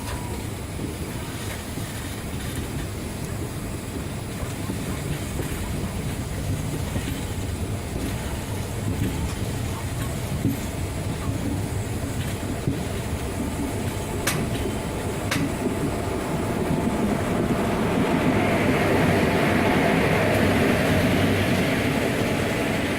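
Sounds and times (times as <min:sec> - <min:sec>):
wheels clicking over rail joints: 0:00.0 - 0:17.2
train rumbling: 0:00.0 - 0:22.9.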